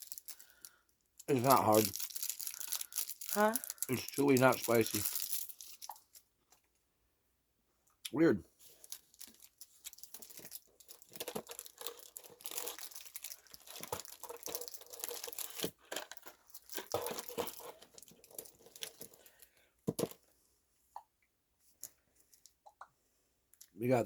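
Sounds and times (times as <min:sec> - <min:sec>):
snack packaging crinkling: 0:00.0 - 0:06.2, 0:08.7 - 0:20.2.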